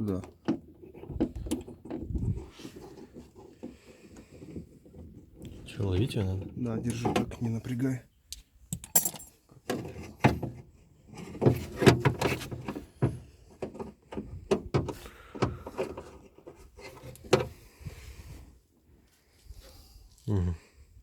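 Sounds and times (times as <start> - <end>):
car door clunking and scraping: 9.7 - 17.7.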